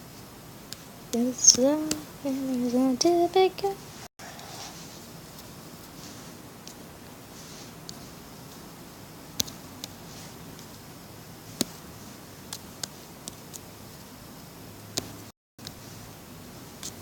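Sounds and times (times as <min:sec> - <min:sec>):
steady low hiss: 0:00.0 - 0:17.0.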